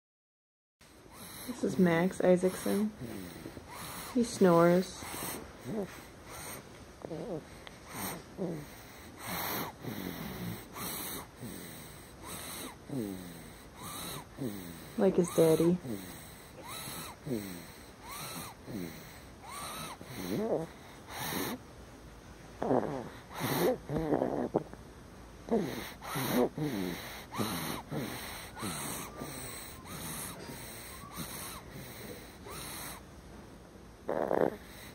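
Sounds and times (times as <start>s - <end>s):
person snoring: 1.2s - 21.6s, 22.6s - 24.6s, 25.5s - 33.0s, 34.1s - 34.9s.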